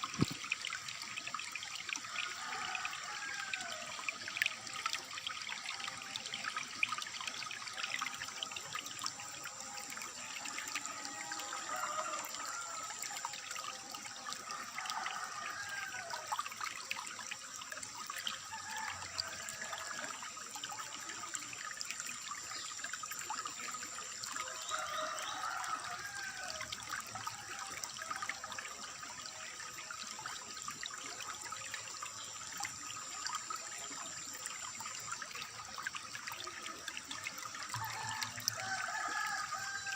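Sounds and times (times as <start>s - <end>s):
water trickling and gurgling: 0.0s - 39.9s.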